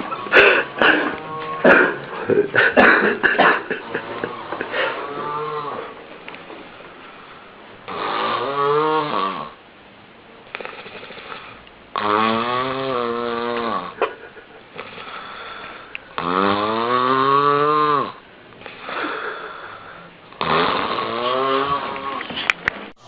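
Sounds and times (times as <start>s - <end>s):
person snoring loudly: 3.5s - 6.0s, 7.9s - 9.6s, 10.6s - 14.0s, 14.8s - 22.4s
quiet breathing: 6.7s - 7.8s, 14.7s - 16.2s, 18.6s - 20.3s.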